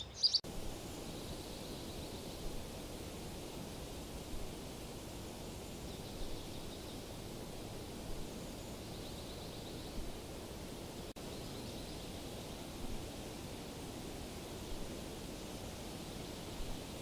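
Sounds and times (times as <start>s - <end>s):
faint high chirping: 0.0s - 0.4s
outdoor background hiss: 0.0s - 17.0s.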